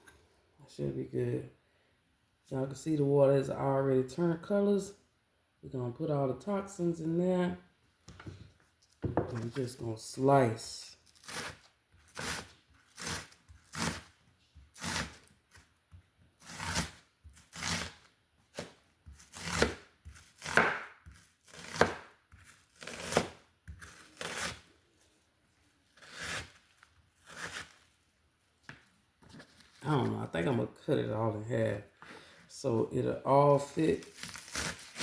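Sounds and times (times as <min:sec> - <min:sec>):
knife slicing onions: 0:11.0 - 0:15.8, 0:16.4 - 0:24.7, 0:26.0 - 0:27.8, 0:34.0 - 0:35.0.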